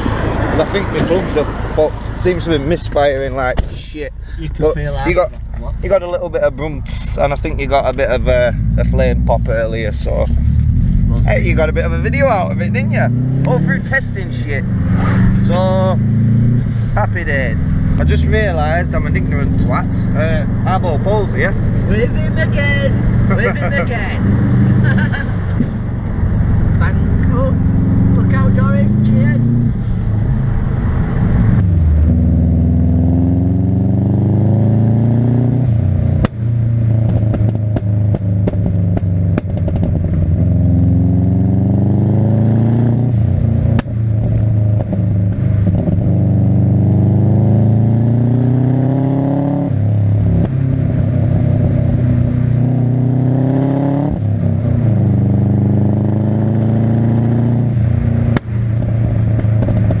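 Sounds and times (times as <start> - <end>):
car engine accelerating: 0.0 - 60.0
sharp exhaust pops and crackles: 5.3 - 14.5, 25.0 - 27.5, 35.6 - 40.6, 43.1 - 46.3, 57.7 - 60.0.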